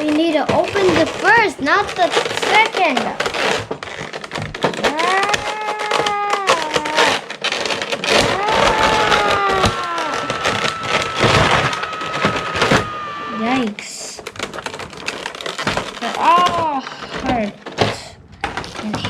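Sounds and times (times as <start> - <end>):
plastic packaging crinkling: 0.0 - 19.0
child straining voice: 4.8 - 7.2, 8.2 - 13.7, 16.0 - 17.4.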